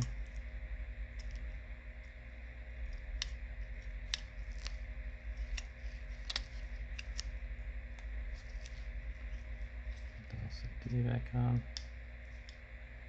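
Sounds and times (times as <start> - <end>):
steady low hum: 0.0 - 13.0
phone parts clicking and tapping: 2.9 - 8.8.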